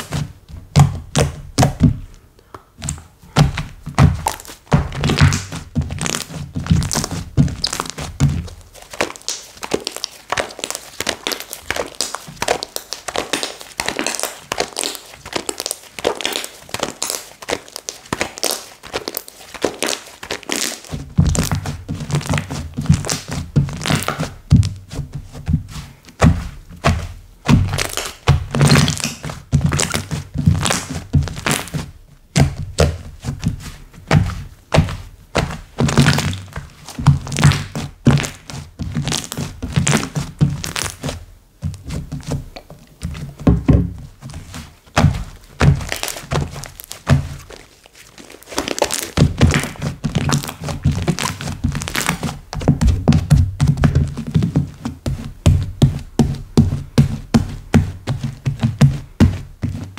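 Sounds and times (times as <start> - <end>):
slime squeezed by hand: 2.8 - 24.8, 26.2 - 41.2, 44.4 - 52.5
soft low thuds: 39.6 - 47.5.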